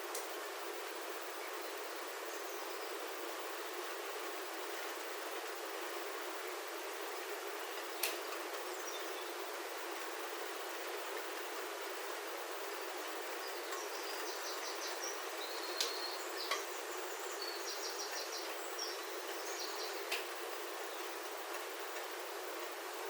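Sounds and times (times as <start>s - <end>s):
rain pattering on a roof: 4.8s - 8.7s, 15.7s - 16.8s, 18.1s - 23.0s.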